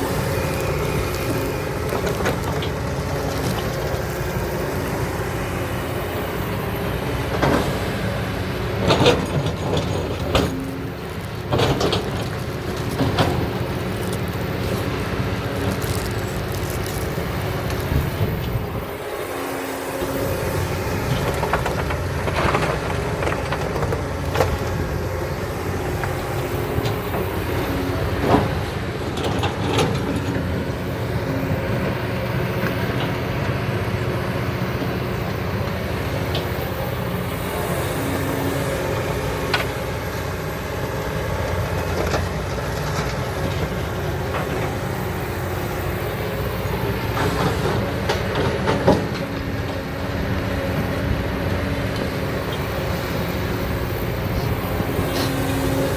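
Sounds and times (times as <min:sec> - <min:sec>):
excavator diesel engine running: 0:00.0 - 0:55.9
sand and rock loading: 0:09.9 - 0:19.2.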